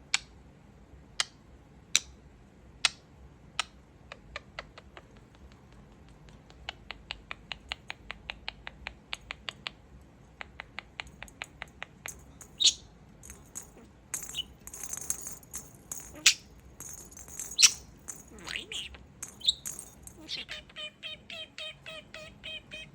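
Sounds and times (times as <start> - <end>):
budgie clicking: 3.6 - 20.4
budgie chirping and chattering: 4.2 - 22.9
bird squawk: 17.6 - 22.9.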